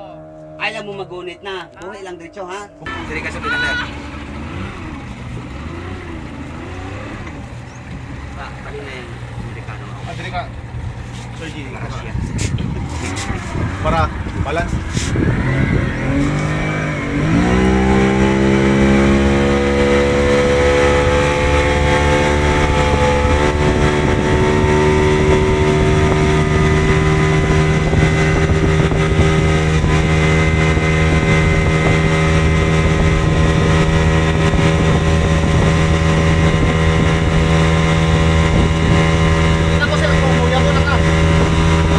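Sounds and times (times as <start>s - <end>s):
jet ski engine: 0.0s - 41.9s.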